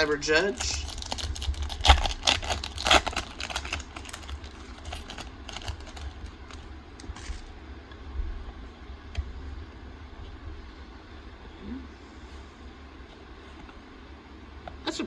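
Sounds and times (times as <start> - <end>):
foil pack crinkling: 0.0 - 7.6
low hum: 0.0 - 14.8
cards clicking and scraping: 0.5 - 7.5.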